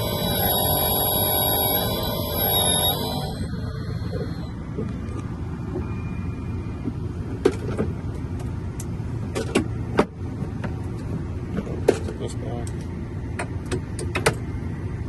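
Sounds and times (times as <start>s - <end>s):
car engine rumble: 0.0s - 15.0s.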